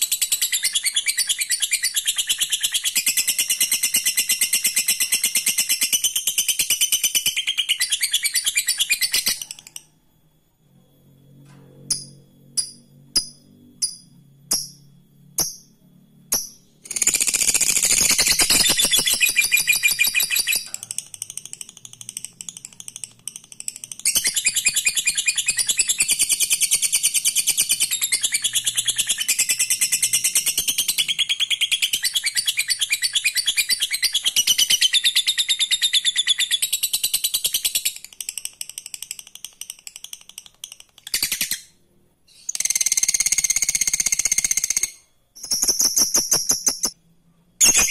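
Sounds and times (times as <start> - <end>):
bird chirps: 0.0 - 10.0, 11.9 - 47.9
lovebird chattering trill: 16.3 - 26.6, 42.4 - 46.9, 47.6 - 47.9.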